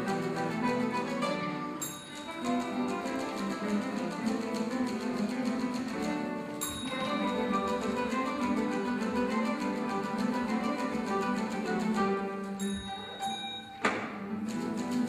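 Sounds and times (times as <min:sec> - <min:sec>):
guitar ensemble playing: 0:00.0 - 0:15.0
bell ringing: 0:01.6 - 0:02.9, 0:06.6 - 0:08.2, 0:12.4 - 0:14.2.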